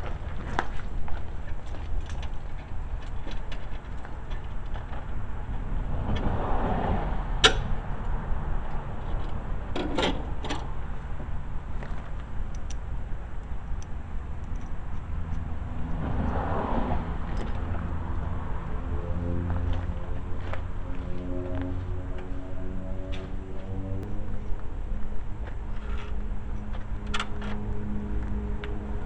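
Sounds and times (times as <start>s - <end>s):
steady low rumble: 0.0s - 29.0s
tools and metal parts clinking: 1.4s - 5.2s, 13.4s - 15.4s.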